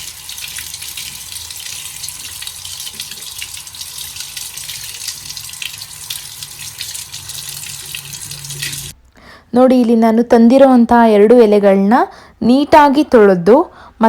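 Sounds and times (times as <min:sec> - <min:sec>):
tap water running into sink: 0:00.0 - 0:09.0.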